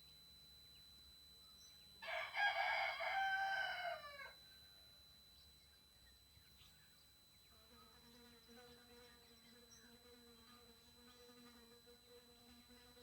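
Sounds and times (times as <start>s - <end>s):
rooster crowing: 2.0s - 4.4s.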